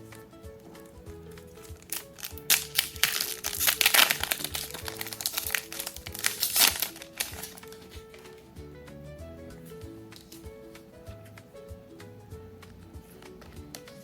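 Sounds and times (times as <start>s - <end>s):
light background music: 0.0s - 14.0s
foil wrapper crinkling: 1.5s - 8.5s.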